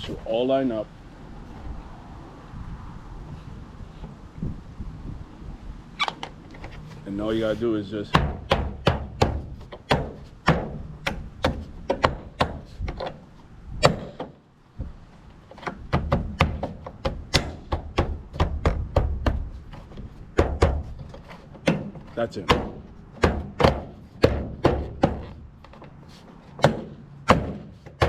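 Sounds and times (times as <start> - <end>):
sharp knocks on plastic cladding: 8.1 - 13.2, 13.8 - 14.4, 15.5 - 25.8, 26.6 - 28.0.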